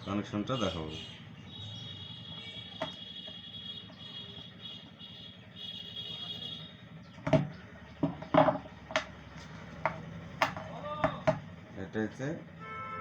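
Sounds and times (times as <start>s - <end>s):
plastic box clicks and knocks: 7.2s - 9.1s, 9.8s - 11.4s.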